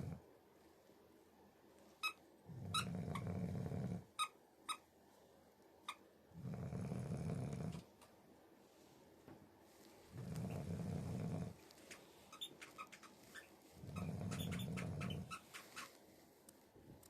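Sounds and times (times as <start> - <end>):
low rasping snores: 2.5 - 4.1, 6.4 - 7.9, 10.2 - 11.6, 13.8 - 15.3.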